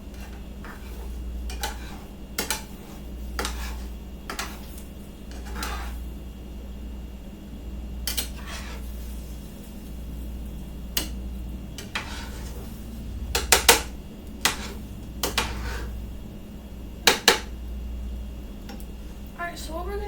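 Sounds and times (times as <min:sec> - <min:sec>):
utensil scraping in frying pan: 0:00.0 - 0:06.2, 0:08.1 - 0:10.2, 0:11.0 - 0:16.0.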